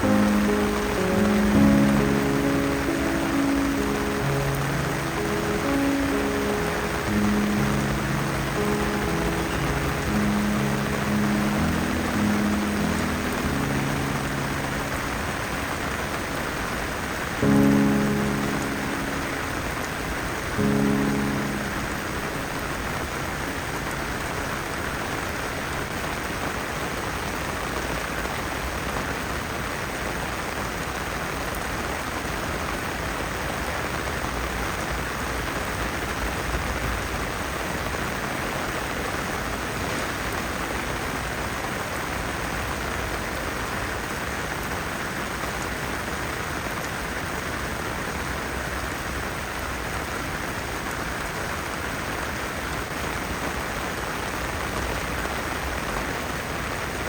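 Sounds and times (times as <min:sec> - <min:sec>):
heavy rain hissing: 0:00.0 - 0:57.0.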